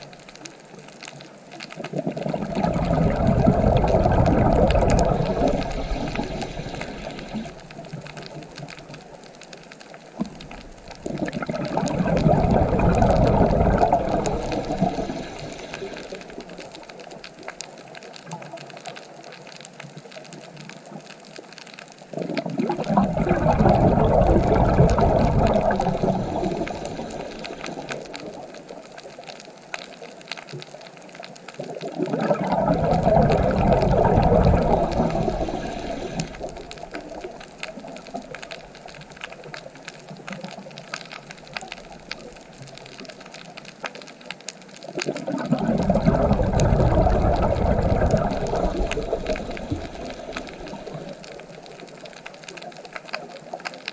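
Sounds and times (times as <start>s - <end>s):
ocean waves breaking on shore: 11.0s - 17.0s.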